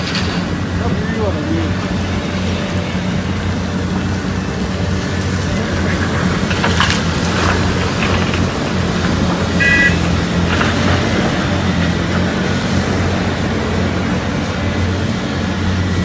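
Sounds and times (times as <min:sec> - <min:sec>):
excavator diesel engine running: 0:00.0 - 0:16.0
short high-pitched beep: 0:09.6 - 0:10.0.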